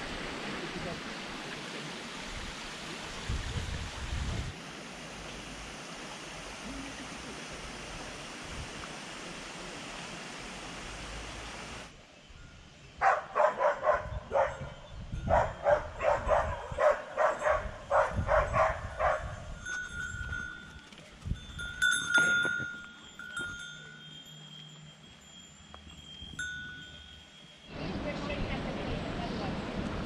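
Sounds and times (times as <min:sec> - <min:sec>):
rushing water: 0:00.0 - 0:12.0
faint ringing tone: 0:21.6 - 0:27.9.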